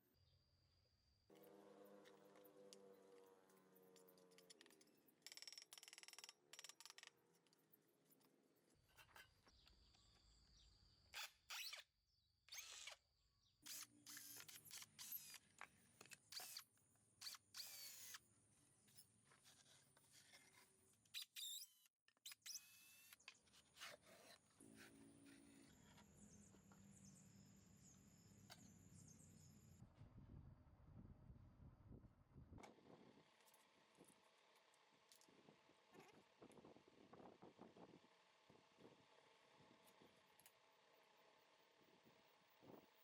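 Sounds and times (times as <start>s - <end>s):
small power tool bursts: 11.1s - 11.9s, 12.5s - 13.0s, 13.6s - 15.6s, 16.3s - 18.2s, 21.2s - 23.2s.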